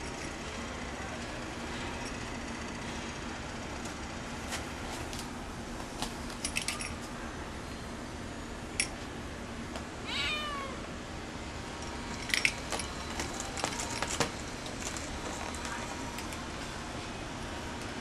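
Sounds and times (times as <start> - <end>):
cat meowing: 10.0 - 10.8.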